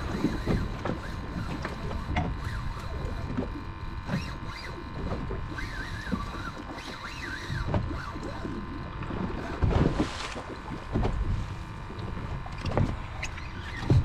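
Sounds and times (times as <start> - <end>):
wind and water rumble: 0.0 - 14.0
fishing reel clicking: 4.0 - 8.6.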